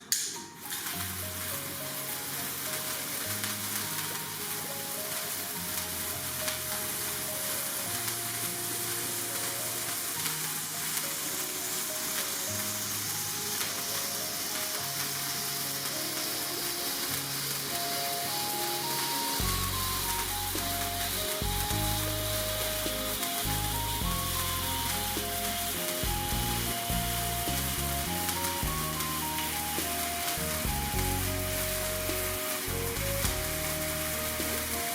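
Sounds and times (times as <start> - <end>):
plucked background music: 0.0 - 34.9
sparkler candle fizzing: 0.0 - 34.9
heavy bass line: 19.4 - 34.8.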